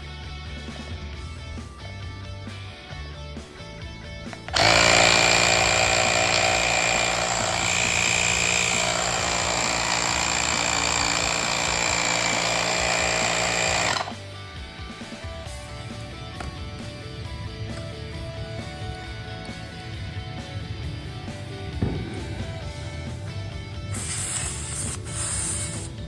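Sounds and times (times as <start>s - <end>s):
tyre inflator compressor buzzing: 4.3s - 14.3s, 18.8s - 26.0s.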